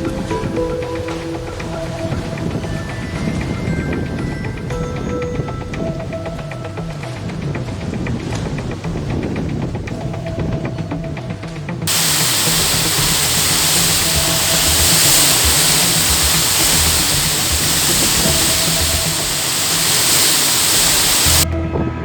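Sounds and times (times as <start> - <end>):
faint background music: 0.0 - 22.0
heavy rain pouring: 11.9 - 21.4.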